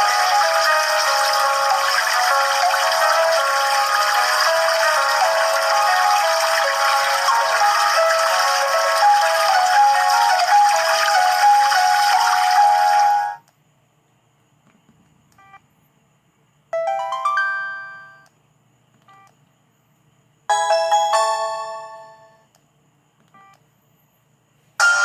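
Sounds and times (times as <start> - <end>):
phone ringtone tune: 0.0 - 13.4, 16.8 - 18.2, 20.5 - 22.4, 24.8 - 25.0
bell-like chimes: 20.5 - 22.4.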